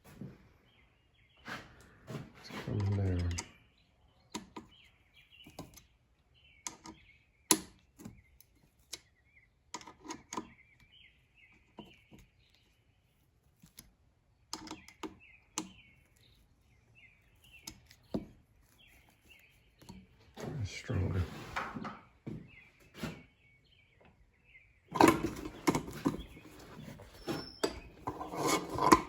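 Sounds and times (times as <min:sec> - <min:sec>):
bird chirps: 0:10.4 - 0:13.2, 0:14.6 - 0:21.1, 0:22.3 - 0:29.0
screw driven by hand tool: 0:24.9 - 0:29.0.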